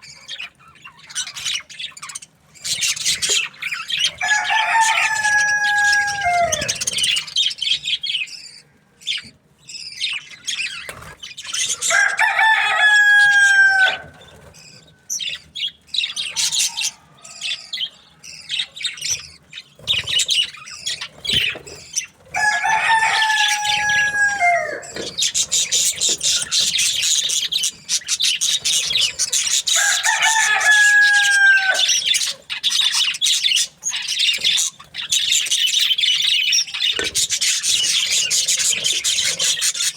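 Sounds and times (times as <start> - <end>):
budgerigars chirping and chattering: 0.0 - 39.9
rooster crowing: 4.2 - 7.1, 11.8 - 14.3, 16.2 - 18.7, 22.3 - 25.3, 29.2 - 32.3.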